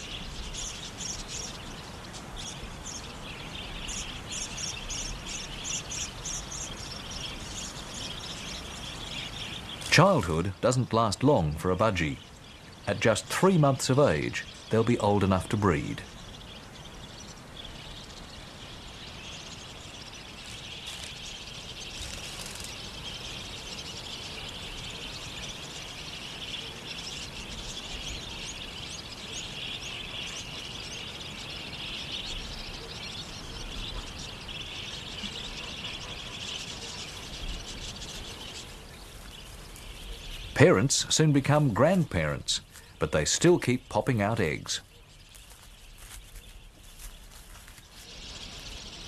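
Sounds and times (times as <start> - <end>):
budgerigars chattering: 0.0 - 49.0.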